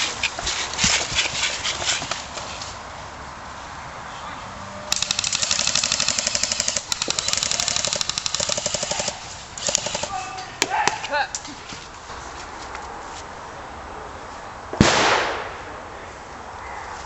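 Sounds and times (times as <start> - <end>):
airsoft rifle rapid fire: 4.9 - 10.2
single sharp cracks: 14.8 - 15.6.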